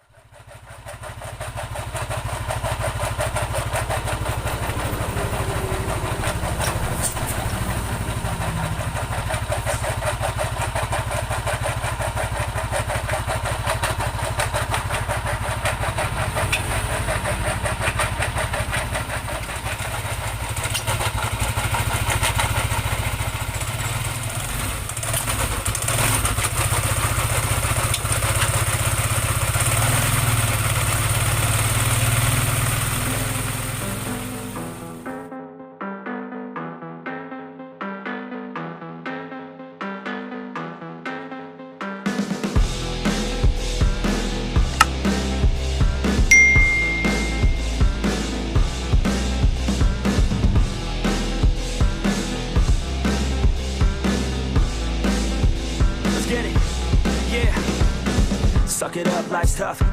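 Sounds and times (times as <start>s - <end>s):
scooter engine idling: 0.0s - 35.0s, 44.6s - 45.0s.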